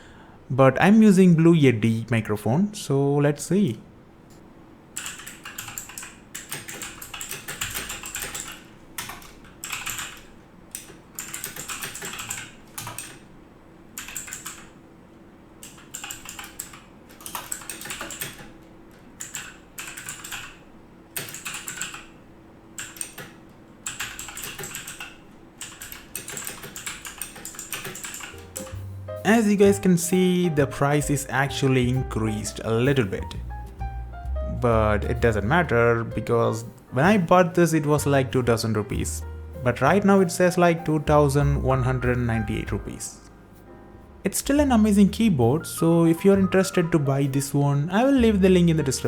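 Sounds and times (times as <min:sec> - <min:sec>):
mechanical keyboard typing clicks: 0:05.0 - 0:13.3, 0:14.0 - 0:14.8, 0:15.6 - 0:18.6, 0:19.2 - 0:22.2, 0:22.8 - 0:28.8.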